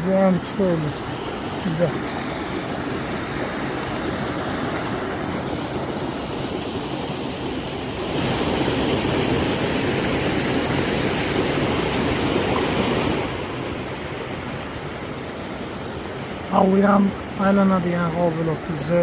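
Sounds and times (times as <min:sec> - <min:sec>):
small waterfall splashing: 0:00.0 - 0:19.0.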